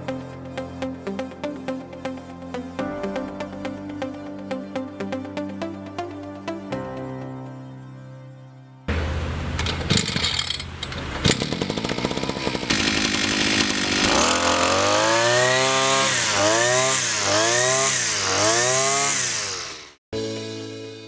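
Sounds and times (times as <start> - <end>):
brushcutter engine revving: 10.0 - 20.0.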